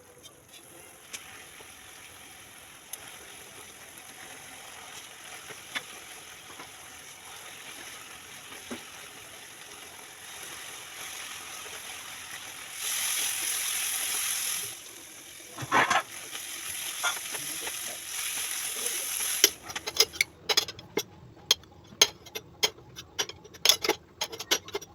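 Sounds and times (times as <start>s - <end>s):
chicken sizzling in a pan: 0.0s - 19.7s
stirring clicks and scrapes: 19.2s - 24.9s.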